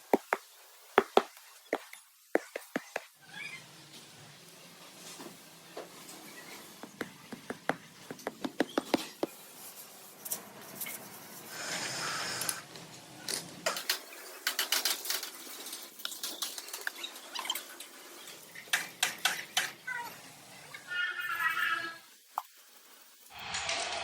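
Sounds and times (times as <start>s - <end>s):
sharp taps and knocks: 0.1s - 3.1s, 6.8s - 9.4s.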